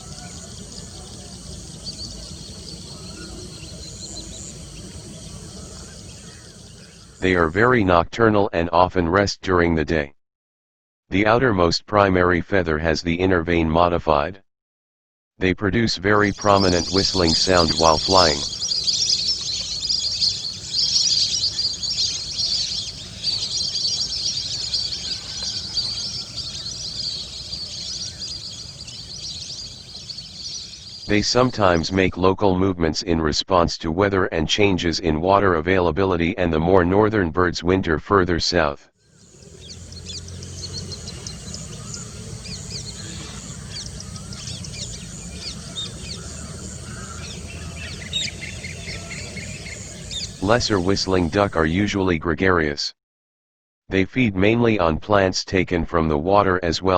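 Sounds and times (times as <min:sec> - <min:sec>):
birds chirping: 0:00.0 - 0:07.9, 0:16.1 - 0:32.3, 0:39.0 - 0:52.1.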